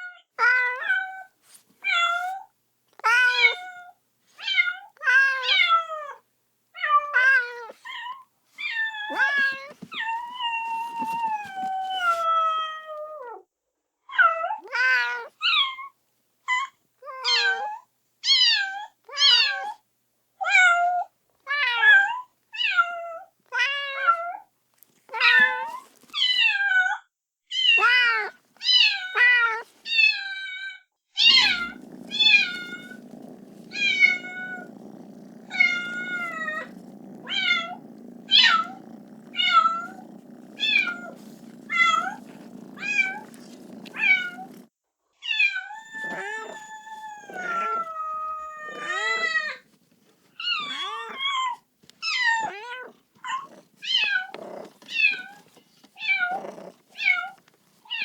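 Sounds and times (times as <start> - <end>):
kitten meowing: 31.2 - 44.6, 45.4 - 49.6.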